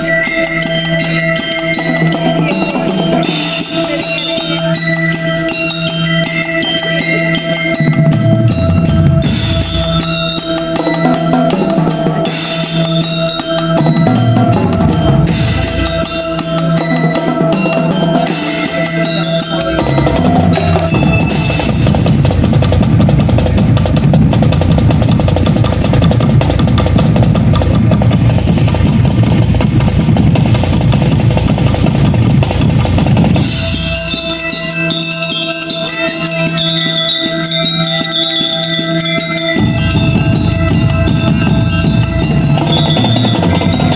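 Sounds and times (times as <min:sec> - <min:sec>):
glockenspiel bell notes: 0:00.0 - 0:43.9
marching band playing: 0:00.0 - 0:43.9
drum roll: 0:01.4 - 0:04.8, 0:07.4 - 0:34.5, 0:39.5 - 0:43.9.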